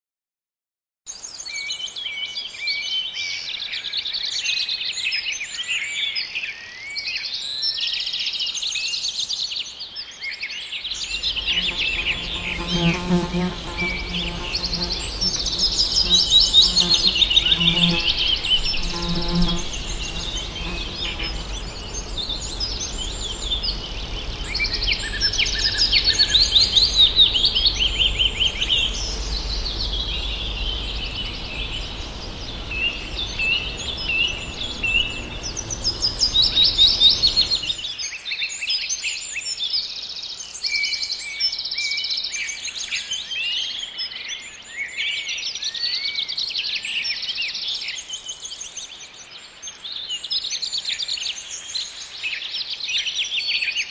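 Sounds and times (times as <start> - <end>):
songbirds singing and chirping: 10.8 - 38.0
low background rumble: 10.9 - 37.9.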